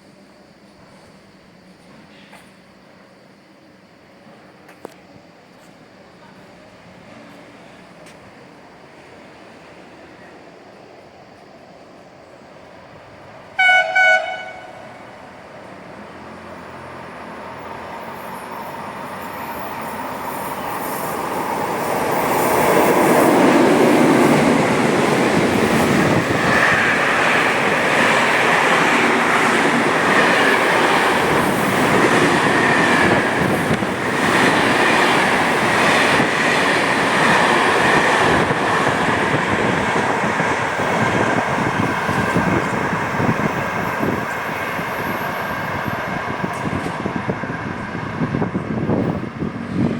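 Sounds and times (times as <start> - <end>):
freight train passing: 0.0 - 49.9
train horn blasts: 13.6 - 15.0
wheels squealing on rails: 13.6 - 49.9.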